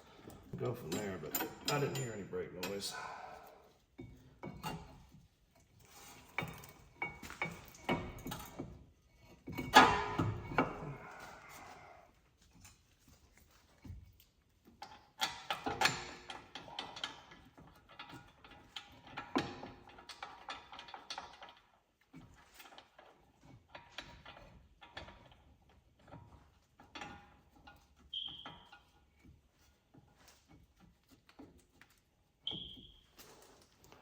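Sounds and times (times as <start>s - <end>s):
metal tools clinking: 0.2s - 3.2s.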